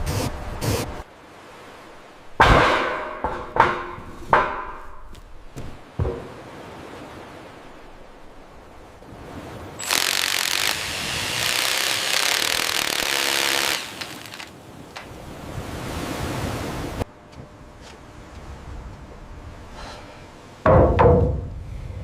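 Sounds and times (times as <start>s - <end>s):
power tool hissing: 9.8s - 14.5s
work noise: 9.8s - 15.1s.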